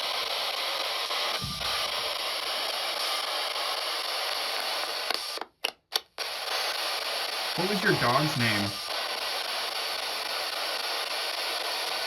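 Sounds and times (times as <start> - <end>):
radio static hiss: 6.5 - 12.0
radio sweeping through stations: 7.6 - 8.9.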